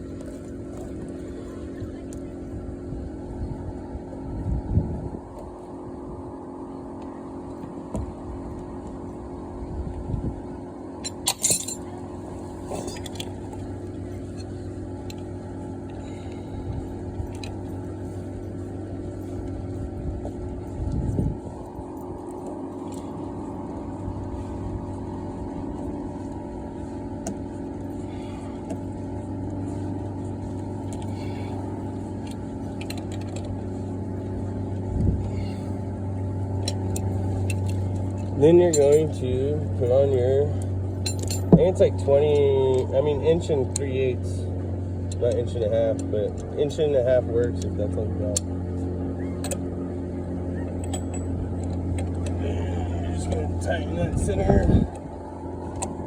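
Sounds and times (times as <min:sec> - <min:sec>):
machine drone with tones: 0:00.0 - 0:56.0
steady low hum: 0:00.0 - 0:56.0
metal tools clinking: 0:11.0 - 0:11.9, 0:41.0 - 0:41.6.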